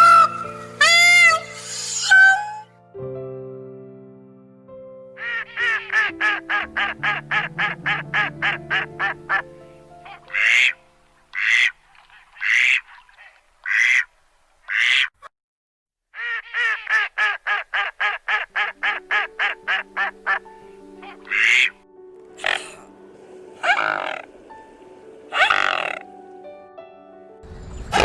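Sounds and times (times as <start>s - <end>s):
bird calling: 0.0s - 2.6s, 5.2s - 14.1s, 16.2s - 26.3s.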